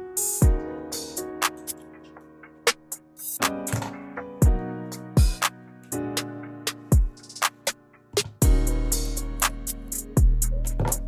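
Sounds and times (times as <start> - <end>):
sharp drum hits: 3.7 - 4.6, 8.2 - 9.6
held chords: 8.1 - 11.0
deep booming kick drum: 8.4 - 9.0, 10.2 - 11.0.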